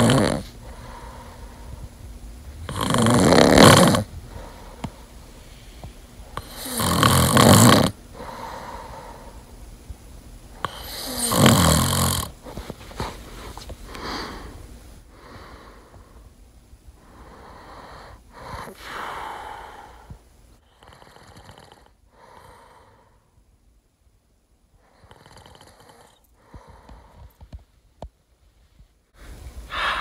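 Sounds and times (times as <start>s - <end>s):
person snoring: 0.0s - 1.8s, 2.4s - 5.1s, 6.2s - 9.4s, 10.6s - 12.4s.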